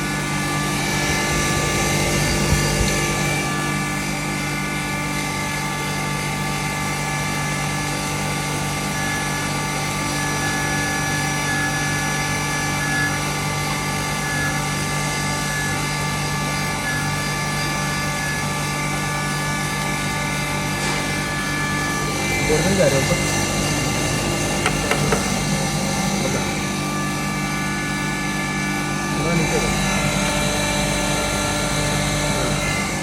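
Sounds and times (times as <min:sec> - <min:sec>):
grinder machine humming: 0:24.7 - 0:25.5.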